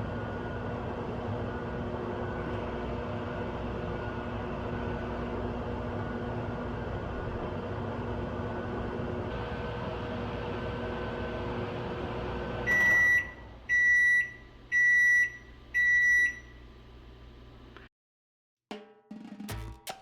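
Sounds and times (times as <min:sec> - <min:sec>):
microwave oven humming: 0:00.0 - 0:17.8
microwave beeping: 0:09.3 - 0:16.9.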